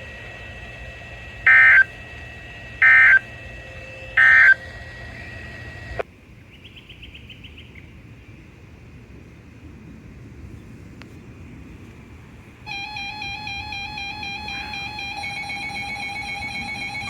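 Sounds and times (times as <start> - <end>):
short digital data tones: 0.0 - 6.0, 12.7 - 17.0.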